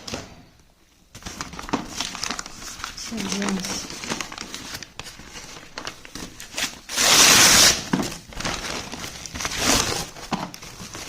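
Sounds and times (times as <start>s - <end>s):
packaging rustling and clicking: 1.2s - 11.0s
loud rasping rip: 6.9s - 7.8s.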